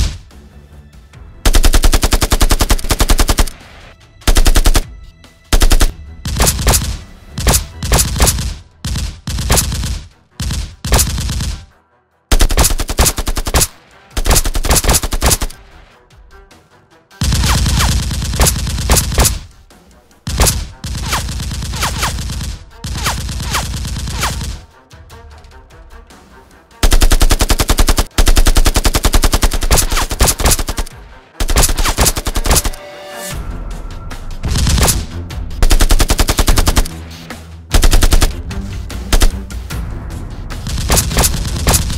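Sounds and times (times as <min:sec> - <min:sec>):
automatic gunfire bursts: 0:01.5 - 0:03.5, 0:04.3 - 0:04.8, 0:05.6 - 0:08.5, 0:12.3 - 0:15.6, 0:17.3 - 0:19.5, 0:26.8 - 0:32.8, 0:34.6 - 0:36.9, 0:37.8 - 0:38.4, 0:39.1 - 0:39.4, 0:40.7 - 0:41.9.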